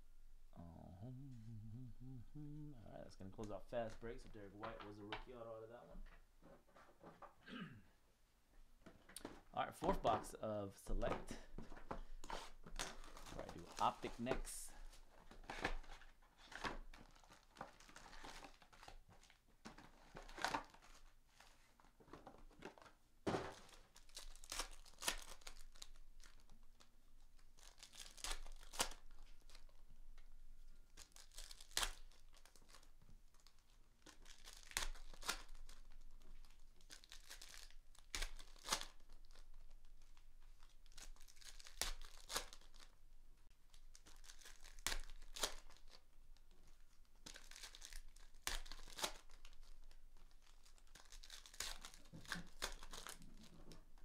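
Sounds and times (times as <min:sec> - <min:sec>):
wrappers being torn open: 0:12.2 - 0:21.2, 0:22.5 - 0:54.0.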